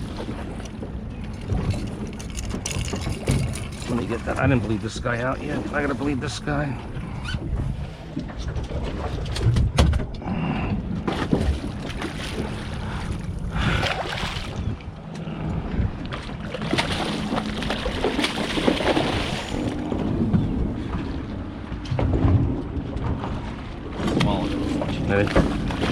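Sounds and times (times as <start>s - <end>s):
boat motor idling: 0.0s - 25.9s
wind buffeting microphone: 0.0s - 25.9s
sharp knocks on boat: 7.4s - 10.2s, 16.6s - 25.9s.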